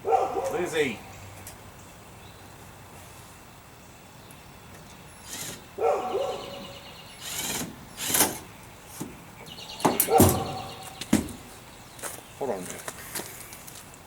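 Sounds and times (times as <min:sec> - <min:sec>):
dog barking: 0:00.0 - 0:00.6, 0:05.8 - 0:06.5, 0:10.1 - 0:10.7
short scuffing noises: 0:09.9 - 0:13.9.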